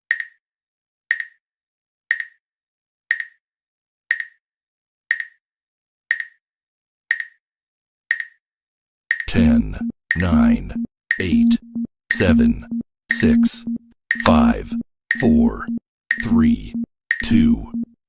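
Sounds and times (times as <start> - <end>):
timer ticks: 0.1 - 0.4, 1.1 - 1.4, 2.1 - 2.4, 3.1 - 3.4, 4.1 - 4.4, 5.1 - 5.4, 6.1 - 6.4, 7.1 - 7.4, 8.1 - 8.4, 9.1 - 18.0.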